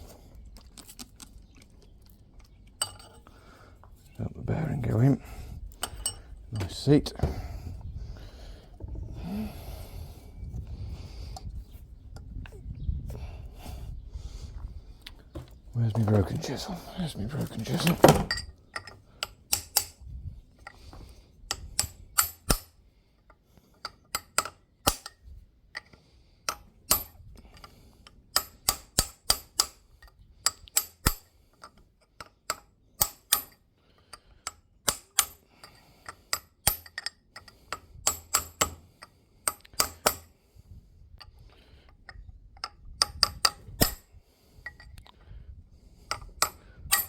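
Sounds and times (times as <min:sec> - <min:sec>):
hammer tapping on metal chisel: 0:34.5 - 0:40.3, 0:42.1 - 0:44.0.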